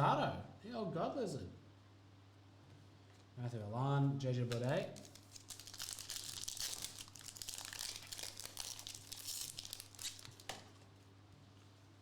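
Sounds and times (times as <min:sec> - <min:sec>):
foil wrapper crinkling: 0:04.6 - 0:10.8.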